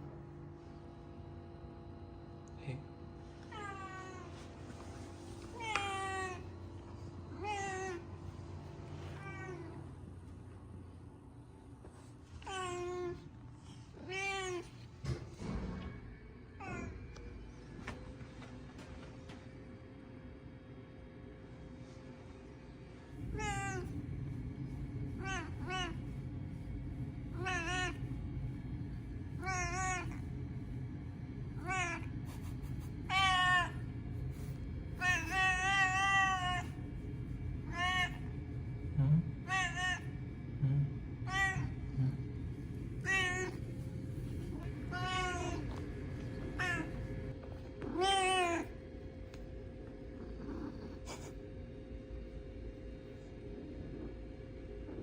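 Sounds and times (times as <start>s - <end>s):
steady low hum: 0.0s - 55.0s
cat meowing: 27.3s - 28.0s, 29.4s - 30.2s, 31.6s - 32.1s, 33.1s - 33.8s, 35.0s - 36.8s, 37.7s - 38.3s, 39.4s - 40.1s, 41.3s - 41.8s, 43.0s - 43.6s, 44.6s - 45.7s, 46.5s - 47.0s, 47.8s - 48.7s.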